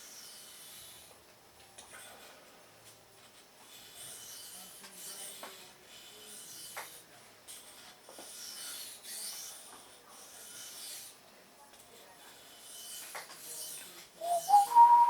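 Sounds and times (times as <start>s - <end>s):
knife rasping on whetstone: 0.0s - 1.1s, 3.7s - 7.0s, 7.6s - 11.2s, 12.3s - 14.5s.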